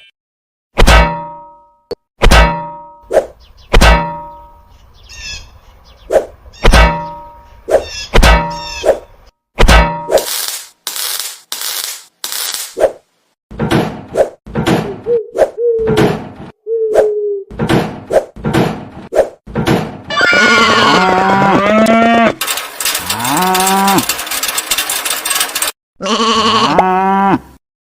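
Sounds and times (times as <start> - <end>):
sharp knocks: 2.2 - 3.1, 3.7 - 4.7, 6.6 - 7.4, 8.1 - 9.0, 9.6 - 10.3, 13.5 - 15.0, 17.5 - 20.1.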